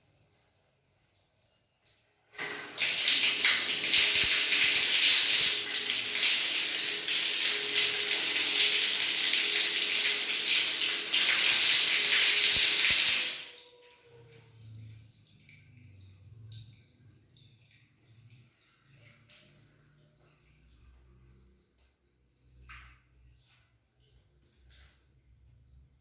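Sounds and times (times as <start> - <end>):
water running from a tap: 2.2 - 21.2.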